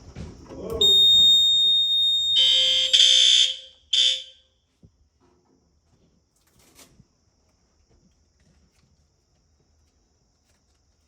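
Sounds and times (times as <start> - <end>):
fire alarm high-pitched tone: 0.8 - 4.5.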